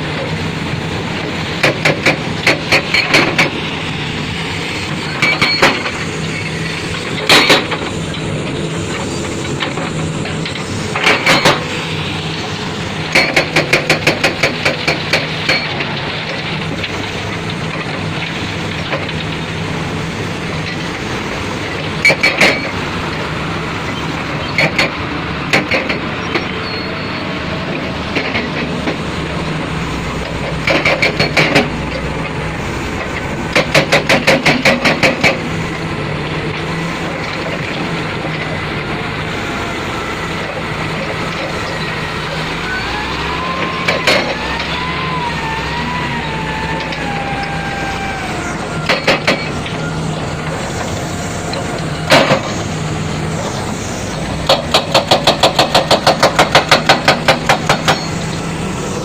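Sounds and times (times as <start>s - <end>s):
diesel engine running: 0.0s - 59.0s
rapid metallic knocks: 33.5s - 35.5s, 54.4s - 58.2s.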